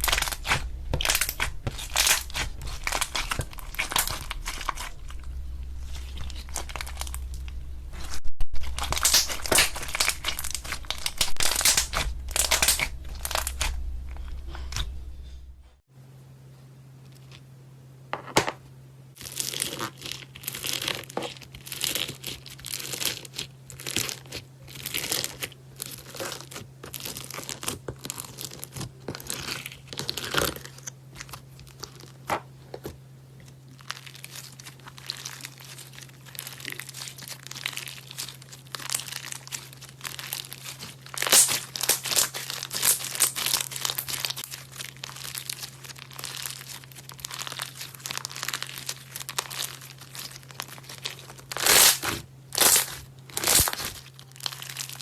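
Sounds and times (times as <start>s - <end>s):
slime crackling and popping: 0.0s - 15.0s, 19.2s - 55.0s
steady low hum: 0.0s - 16.9s.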